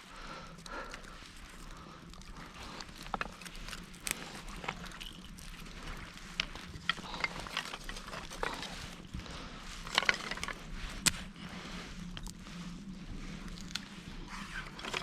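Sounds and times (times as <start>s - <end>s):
twig fire snapping and crackling: 0.5s - 11.5s.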